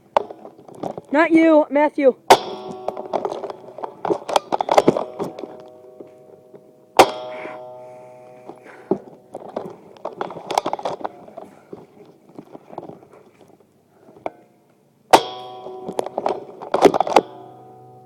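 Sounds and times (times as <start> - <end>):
sharp clicks and knocks: 2.3 - 7.6, 8.4 - 13.6, 15.1 - 17.7
hard metallic clang ringing: 2.3 - 11.2, 15.1 - 18.0.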